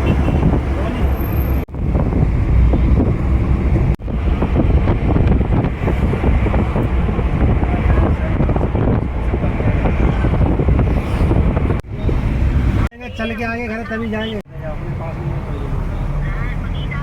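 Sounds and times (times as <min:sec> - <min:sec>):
wind buffeting microphone: 0:00.0 - 0:12.9
moving vehicle rumble: 0:00.0 - 0:17.0.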